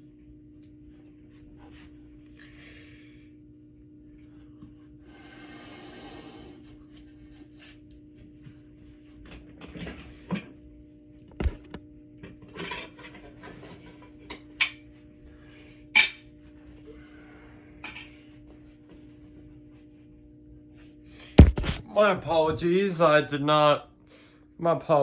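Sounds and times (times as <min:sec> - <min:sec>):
puffs of breath: 0:02.3 - 0:03.4, 0:05.1 - 0:06.8
sharp knock: 0:21.4 - 0:21.8
rubbery handling noises: 0:21.4 - 0:21.9.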